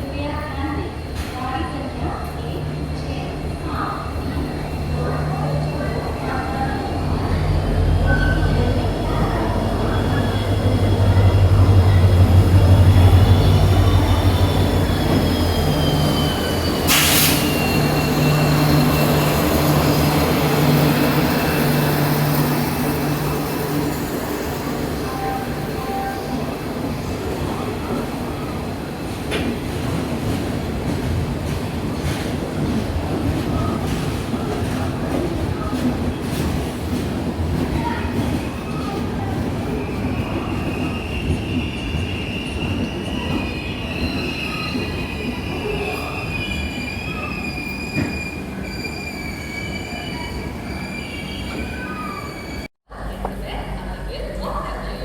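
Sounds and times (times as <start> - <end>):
train coaches rumbling on rails: 0.0 - 55.0
metallic wheel squeal: 13.2 - 20.2.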